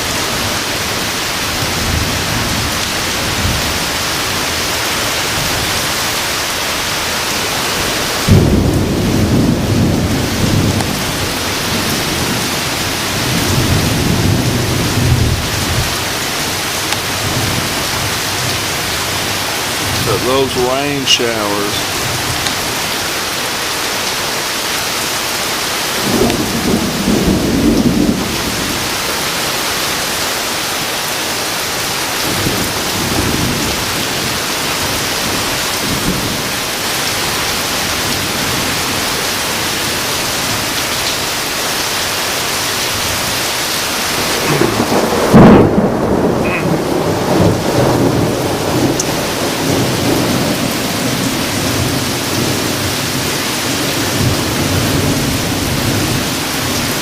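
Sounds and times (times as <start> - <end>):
heavy rain falling: 0.0 - 57.0
thunder rumbling: 26.0 - 28.9, 44.1 - 52.9.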